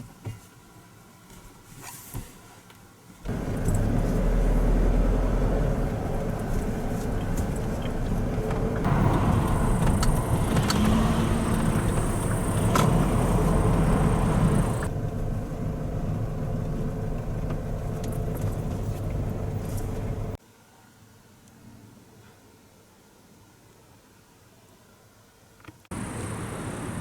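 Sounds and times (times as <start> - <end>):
vehicle engine and road rumble: 3.2 - 20.4, 25.9 - 27.0.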